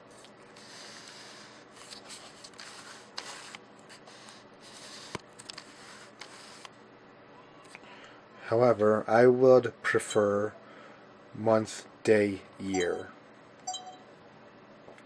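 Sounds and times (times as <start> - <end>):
hands rubbing camcorder: 1.8 - 6.7.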